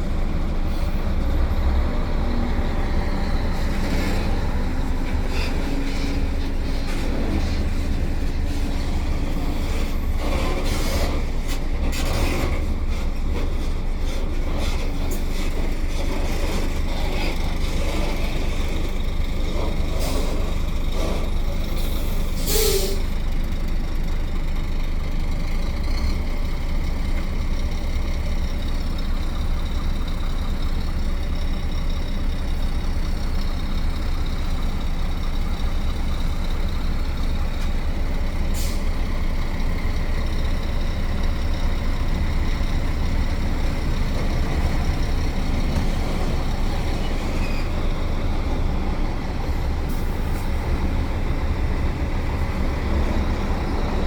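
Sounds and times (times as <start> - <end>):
road noise: 0.0 - 54.0
truck diesel engine: 0.0 - 54.0
air brake hisses: 19.9 - 23.2, 38.4 - 39.0.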